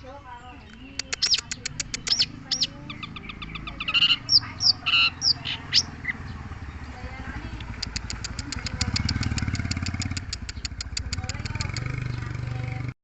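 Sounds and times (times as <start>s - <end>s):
bird singing sharp chips: 0.0s - 6.9s, 7.6s - 12.4s.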